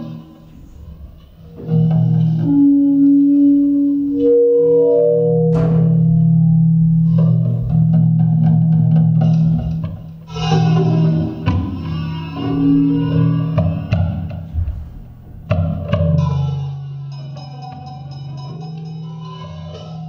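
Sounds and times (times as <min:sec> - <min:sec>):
plucked guitar: 0:01.4 - 0:16.7
sustained bass line: 0:01.6 - 0:10.4.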